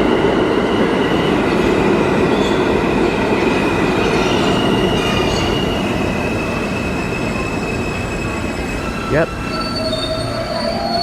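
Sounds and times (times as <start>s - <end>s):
subway train wheels rumbling: 0.0s - 11.0s
high wheel squeal: 3.8s - 11.0s.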